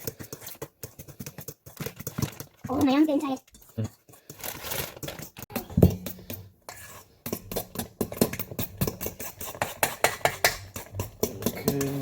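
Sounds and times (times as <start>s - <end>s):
fork beating batter in bowl: 0.0s - 12.0s.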